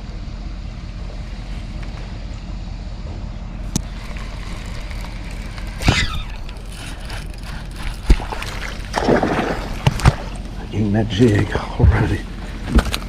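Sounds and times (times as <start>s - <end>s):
steady low rumble: 0.0s - 13.0s
water splashing against boat: 3.7s - 13.0s.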